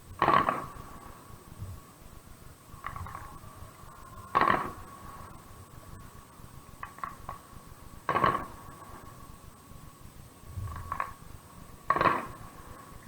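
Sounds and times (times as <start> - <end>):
fireworks loud bangs: 0.2 - 1.1, 4.3 - 5.0, 8.1 - 8.9, 11.9 - 13.0
small firework pops: 0.2 - 1.1, 2.8 - 3.4, 4.3 - 5.1, 6.8 - 7.5, 8.1 - 9.0, 10.6 - 11.2, 11.9 - 13.0.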